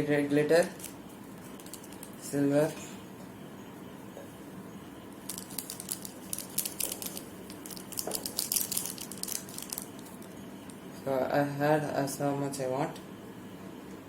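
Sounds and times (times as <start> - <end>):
glitter shaken from container: 5.2 - 10.1.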